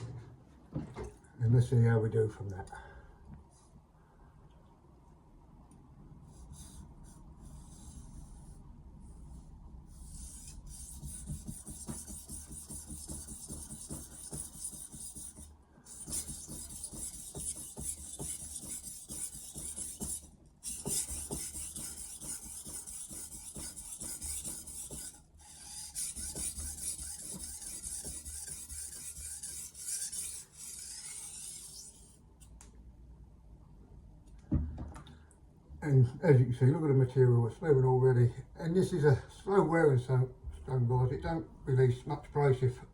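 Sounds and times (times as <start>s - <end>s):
knife rasping on sharpening stone: 10.1s - 32.1s.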